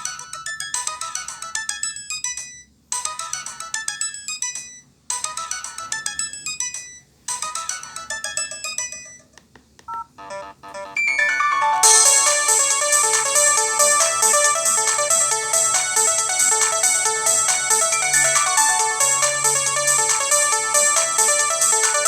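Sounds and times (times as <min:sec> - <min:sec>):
phone ringtone melody: 0:00.0 - 0:09.3, 0:09.9 - 0:22.0
louder different ringtone: 0:09.9 - 0:22.0.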